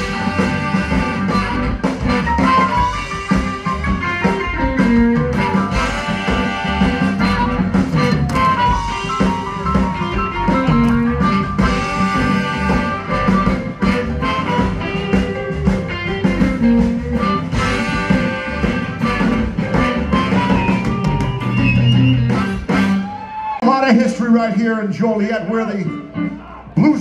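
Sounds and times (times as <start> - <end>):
live blues band playing: 0.0 - 27.0.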